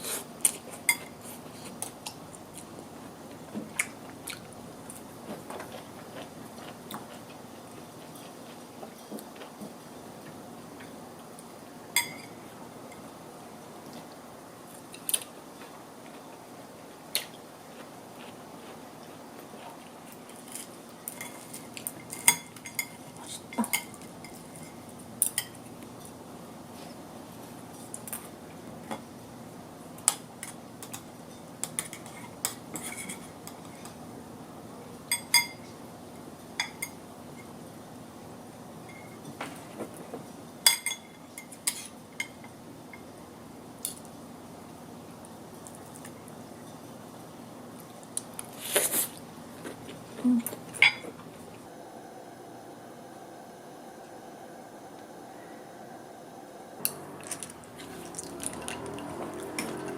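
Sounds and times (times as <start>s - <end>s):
cutlery clinking against dishes: 12.0s - 13.0s, 20.4s - 26.1s, 35.1s - 35.6s, 40.6s - 42.6s.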